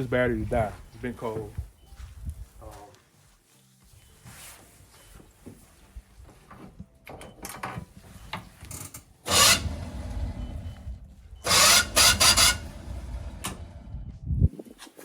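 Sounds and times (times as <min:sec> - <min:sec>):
starter motor grinding: 0:09.3 - 0:14.1.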